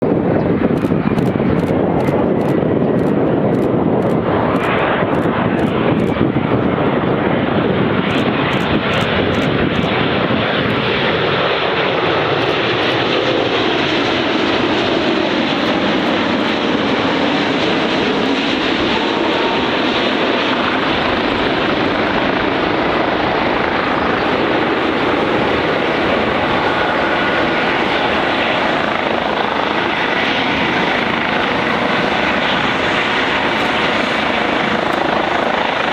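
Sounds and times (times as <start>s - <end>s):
jet engines roaring: 0.0s - 35.9s.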